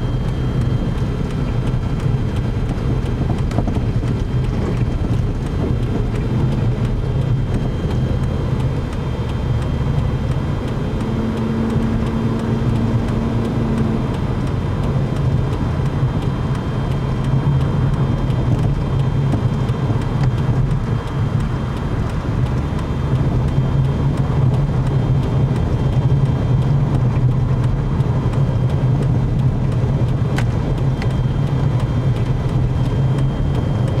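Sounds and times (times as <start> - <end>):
car engine and road noise: 0.0 - 34.0.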